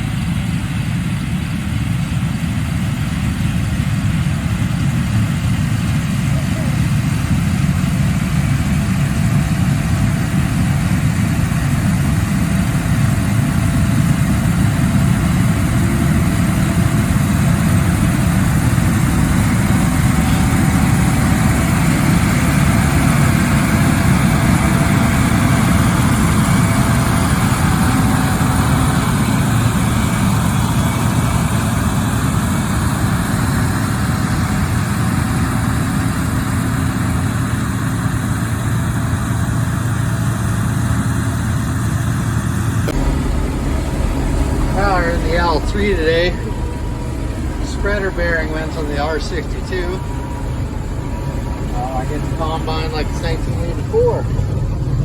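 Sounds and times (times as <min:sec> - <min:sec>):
diesel engine rumble: 0:00.0 - 0:55.0
faint steady whine: 0:12.6 - 0:38.2, 0:42.9 - 0:55.0.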